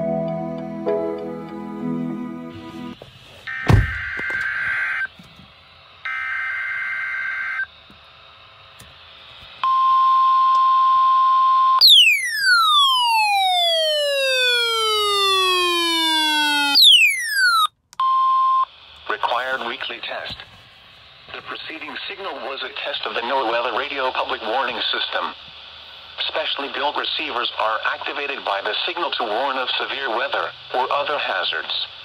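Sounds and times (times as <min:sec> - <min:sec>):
steady warning alarm tone: 0:03.5 - 0:05.1, 0:06.0 - 0:07.7, 0:09.6 - 0:17.7.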